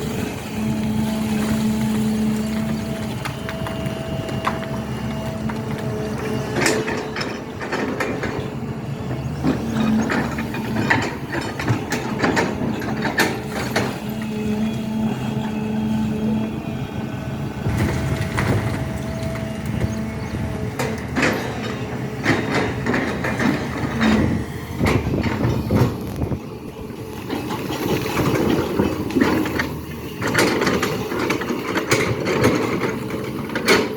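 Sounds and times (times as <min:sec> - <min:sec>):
excavator diesel engine running: 0:00.0 - 0:33.9
metallic clanks and knocks: 0:05.4 - 0:14.3, 0:20.7 - 0:26.3, 0:27.3 - 0:33.9.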